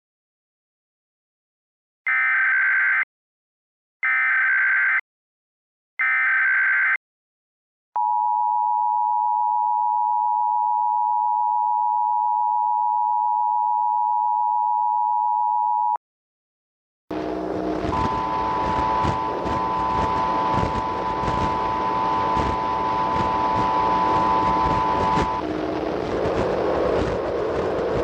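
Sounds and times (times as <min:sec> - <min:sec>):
data bursts: 0:17.3 - 0:28.0
two-tone attention signal: 0:17.6 - 0:25.6.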